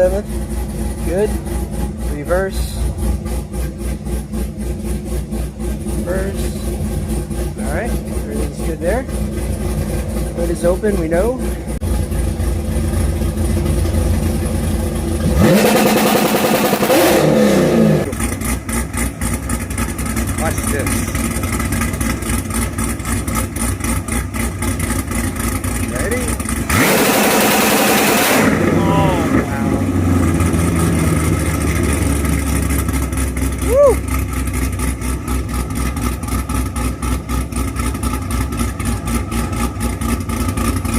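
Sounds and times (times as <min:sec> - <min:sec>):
car engine idling and revving: 0:00.0 - 0:40.9.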